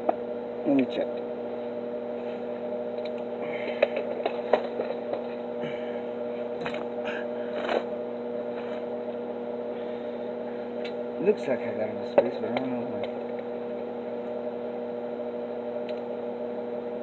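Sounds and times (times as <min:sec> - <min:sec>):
welder electrical hum: 0:00.0 - 0:17.0.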